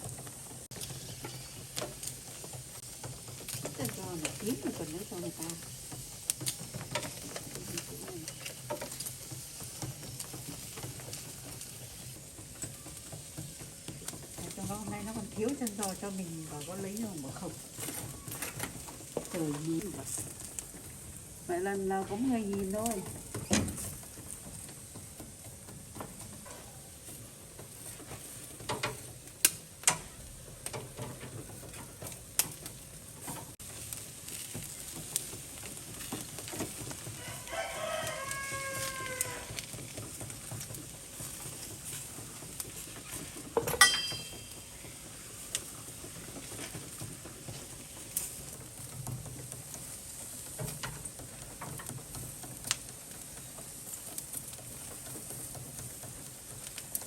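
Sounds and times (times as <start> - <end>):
faint sizzle: 0.0 - 57.0
rooster crowing: 37.1 - 39.6.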